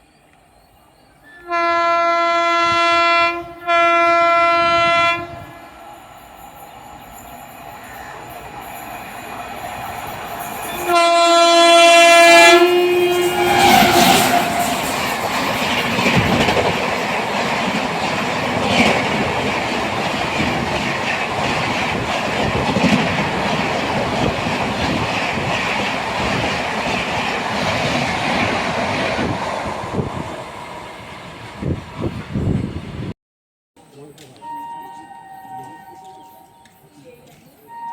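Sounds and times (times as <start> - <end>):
train two-tone horn: 1.3 - 6.0, 10.6 - 15.6, 34.4 - 36.8, 37.6 - 37.9
train rumble: 1.6 - 33.1.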